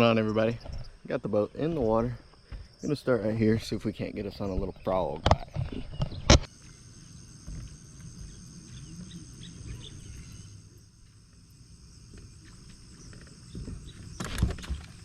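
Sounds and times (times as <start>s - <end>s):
high insect drone: 0.0s - 15.0s
faint bird chirps: 8.2s - 10.8s.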